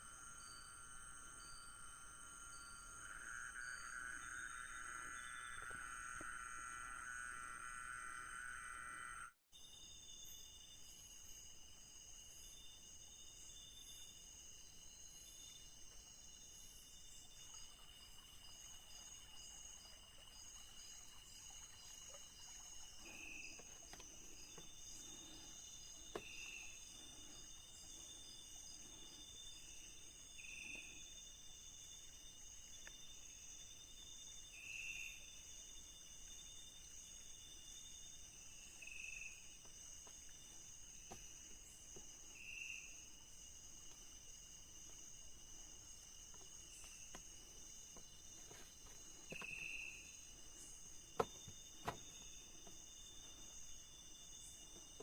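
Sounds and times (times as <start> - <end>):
insects trilling: 0.0 - 55.0.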